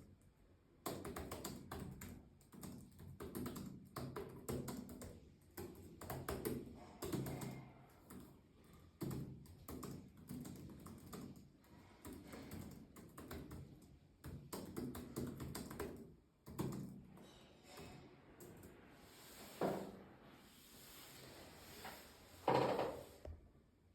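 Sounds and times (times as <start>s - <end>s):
fast keyboard typing: 0.8s - 17.1s.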